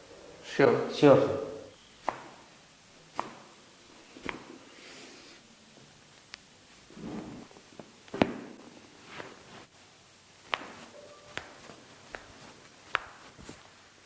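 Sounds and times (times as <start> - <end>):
clothing rustling: 6.7 - 9.8, 10.4 - 14.0.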